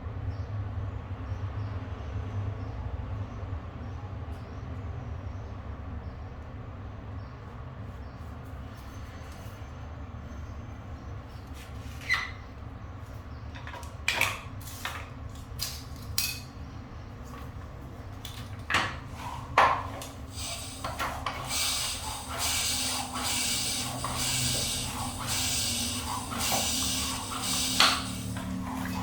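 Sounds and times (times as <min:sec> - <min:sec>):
steady hiss: 0:19.1 - 0:29.0.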